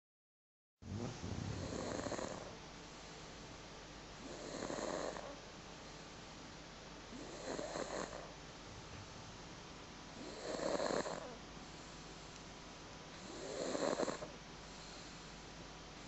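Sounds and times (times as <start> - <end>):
toddler snoring: 0.8 - 2.6, 4.2 - 5.4, 7.1 - 8.4, 10.2 - 11.4, 13.2 - 15.1
quiet breathing: 0.9 - 3.4, 10.2 - 16.0.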